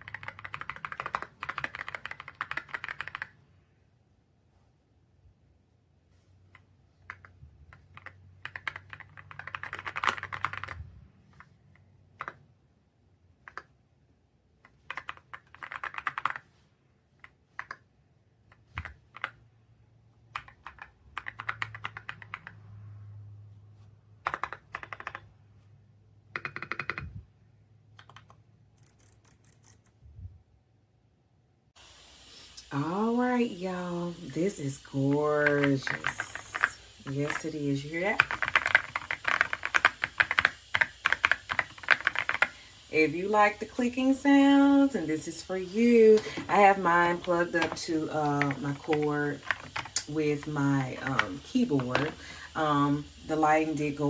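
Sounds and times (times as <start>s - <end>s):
mechanical keyboard typing: 0.0s - 3.4s, 6.5s - 11.5s, 12.2s - 12.4s, 14.7s - 16.5s, 18.5s - 19.4s, 20.3s - 22.6s, 24.2s - 25.3s, 26.3s - 27.2s, 28.0s - 29.8s, 35.4s - 42.6s, 45.1s - 52.2s.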